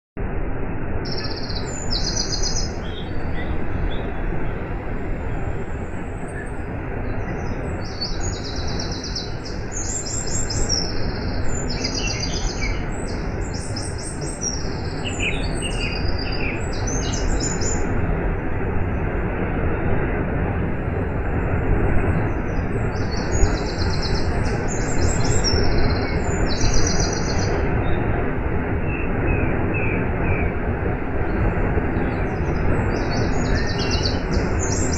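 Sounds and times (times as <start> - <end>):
small bird trilling: 1.1 - 5.4.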